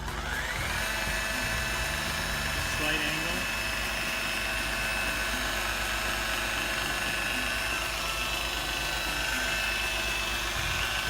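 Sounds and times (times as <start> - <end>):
rotary buffer motor whine: 0.0 - 11.0.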